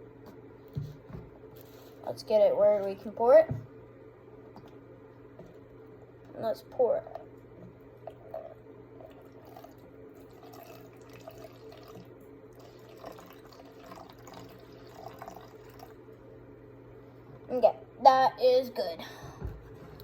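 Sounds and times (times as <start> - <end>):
liquid trickling into a cup: 9.0 - 16.0.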